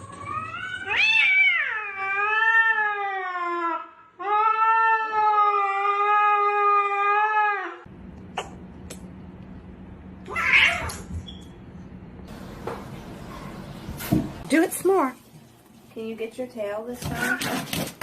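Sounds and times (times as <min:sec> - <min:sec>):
cat yowling meows: 0:00.1 - 0:07.9, 0:10.3 - 0:11.0.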